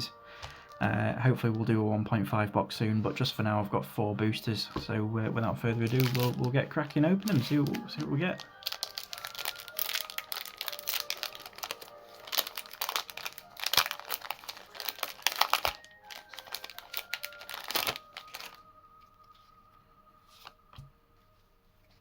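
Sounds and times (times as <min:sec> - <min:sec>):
foil wrapper crinkling and tearing: 0:05.7 - 0:18.6.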